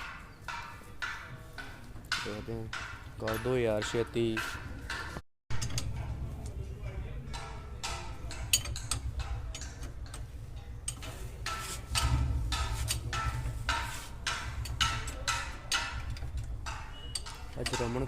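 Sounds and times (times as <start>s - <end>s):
hand tools clicking on metal: 0.0s - 6.6s, 7.3s - 18.0s
steady low hum: 5.6s - 17.6s.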